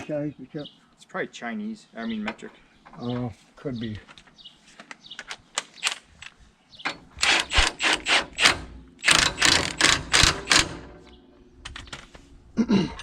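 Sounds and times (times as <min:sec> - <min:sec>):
ratchet wrench clicking: 0:07.2 - 0:10.7.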